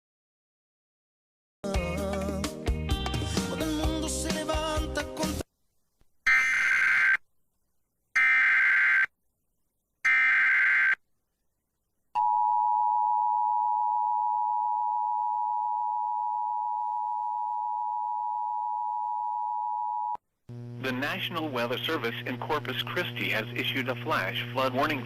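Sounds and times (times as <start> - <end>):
warbling data tones: 6.3 - 7.2.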